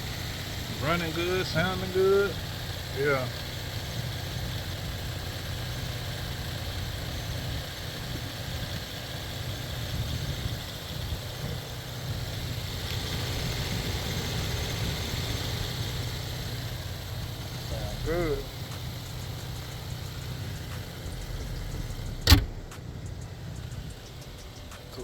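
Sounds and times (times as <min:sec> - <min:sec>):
car engine idling: 0:00.0 - 0:25.0.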